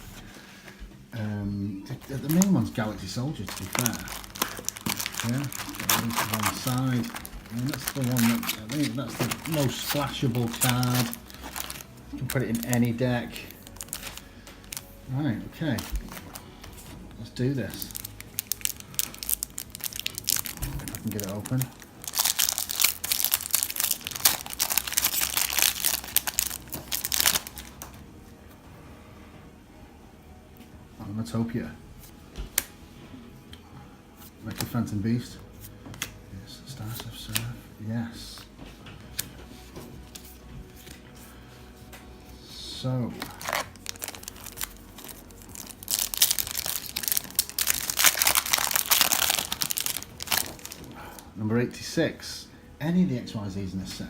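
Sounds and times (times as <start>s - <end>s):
plastic wrapping crinkling and tearing: 1.9s - 28.0s, 38.4s - 51.4s.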